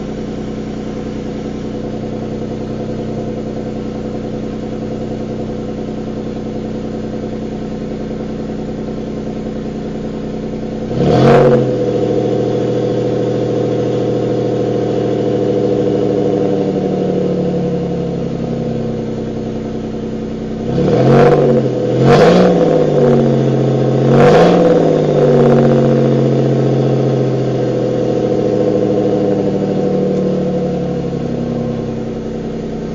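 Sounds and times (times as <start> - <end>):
car engine idling: 0.0 - 32.9
car engine revving: 0.0 - 32.9.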